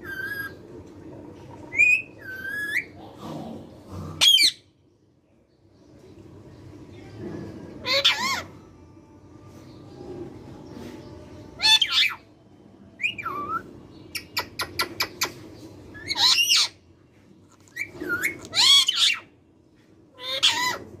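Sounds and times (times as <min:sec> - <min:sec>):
parakeet squawking: 0:04.2 - 0:04.6, 0:07.8 - 0:08.5, 0:11.6 - 0:12.2, 0:16.0 - 0:16.8, 0:17.7 - 0:19.3, 0:20.2 - 0:21.0.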